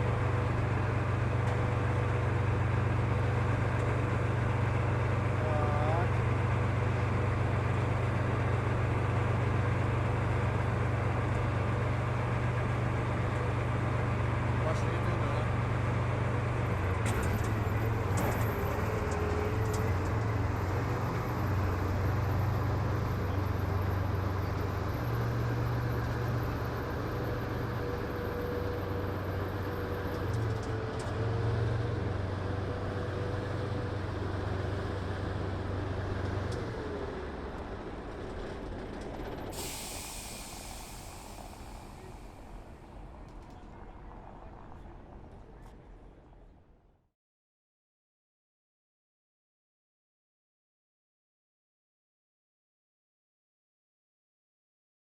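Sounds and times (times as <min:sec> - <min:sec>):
engine whine: 0:00.0 - 0:46.8
heavy vehicle engines passing: 0:00.0 - 0:46.8
loud hiss: 0:39.6 - 0:42.2.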